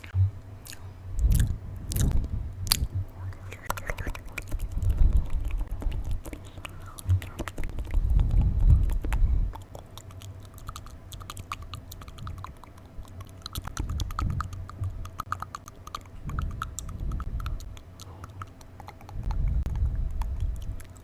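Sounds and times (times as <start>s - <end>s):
soft low thuds: 0.0s - 3.4s, 13.8s - 15.0s
wet tongue clicks and lip smacks: 0.6s - 21.0s.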